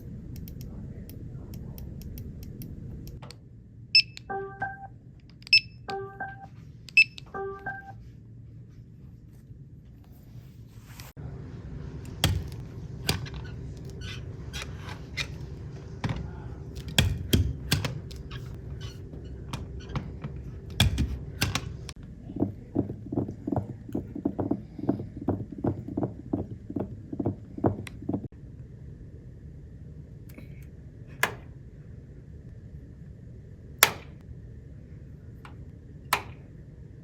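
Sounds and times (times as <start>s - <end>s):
sharp irregular clicks and taps: 0.0s - 3.4s.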